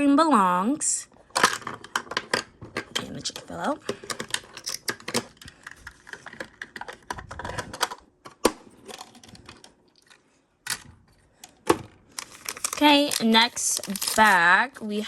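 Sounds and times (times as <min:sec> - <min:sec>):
plastic toys clicking: 0:01.4 - 0:10.8.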